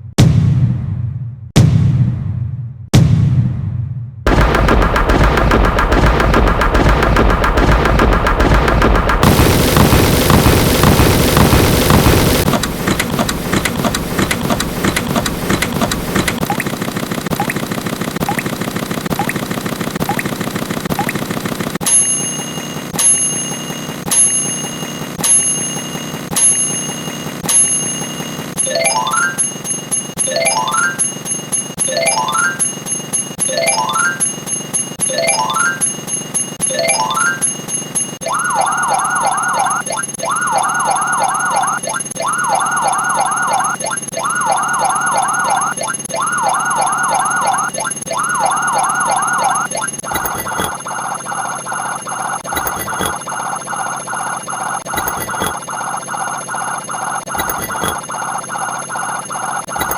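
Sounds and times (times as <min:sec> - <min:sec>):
fast steady ticking: 0:04.3 - 0:30.2, 0:37.7 - 0:59.9
microwave chime ding: 0:21.8 - 0:45.7
ascending xylophone run: 0:28.6 - 0:32.8, 0:33.4 - 0:34.4, 0:35.0 - 0:36.0, 0:36.6 - 0:37.6
police siren wails: 0:38.3 - 0:49.7.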